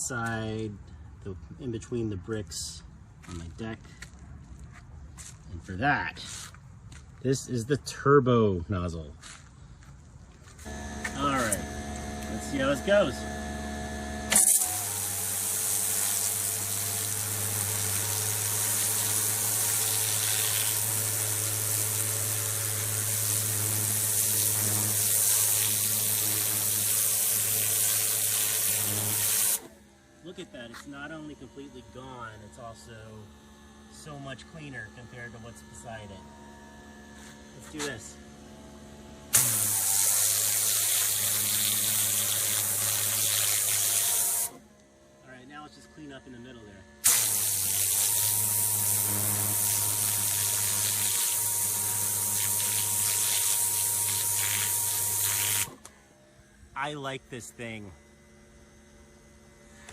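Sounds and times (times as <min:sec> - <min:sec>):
pump humming: 0:10.5 - 0:59.9
pressure washer jet hissing: 0:10.7 - 0:29.7, 0:39.3 - 0:44.6, 0:47.0 - 0:55.8.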